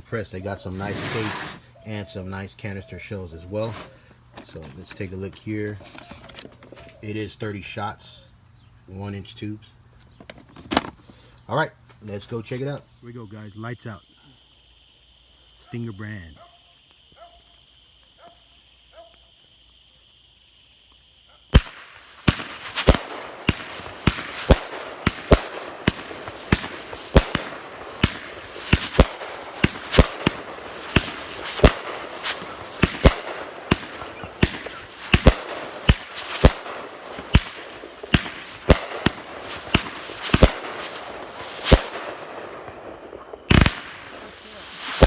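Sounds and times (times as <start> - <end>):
crickets chirping: 0.0 - 45.0
firework cake firing: 0.7 - 1.6, 21.5 - 45.0.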